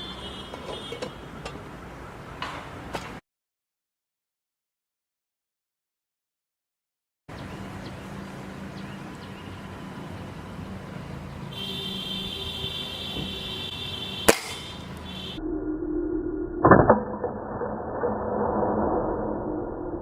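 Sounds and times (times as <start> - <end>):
air rifle shots: 14.3 - 14.8.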